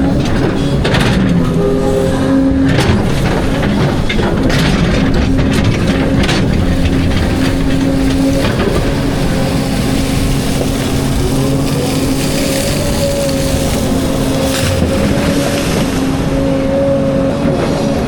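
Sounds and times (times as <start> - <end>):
excavator engine and hydraulic whine: 0.0 - 18.0
bucket knocking and scraping rock: 2.6 - 16.3.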